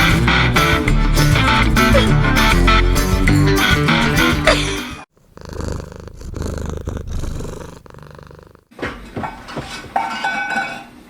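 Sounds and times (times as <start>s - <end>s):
music: 0.0s - 5.0s
cat purring: 4.5s - 8.7s.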